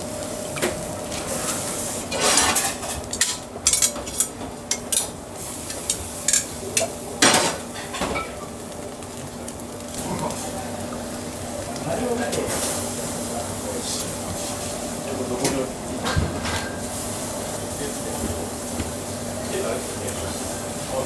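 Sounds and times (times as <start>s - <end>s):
dishes and utensils clinking: 1.5s - 8.4s.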